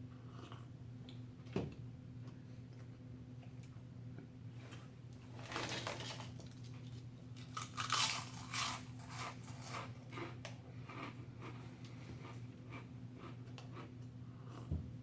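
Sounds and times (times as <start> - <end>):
person chewing a sandwich: 6.4 - 14.7
crunchy chewing: 7.4 - 14.7.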